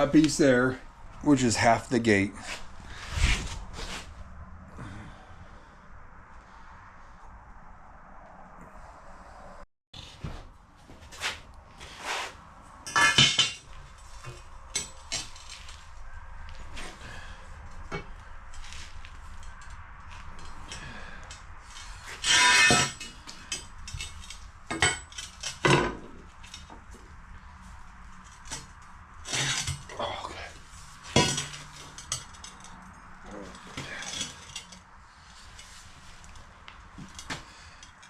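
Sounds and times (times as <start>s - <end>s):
metal clanks and knocks: 12.9s - 15.5s, 22.2s - 26.9s, 31.1s - 34.8s.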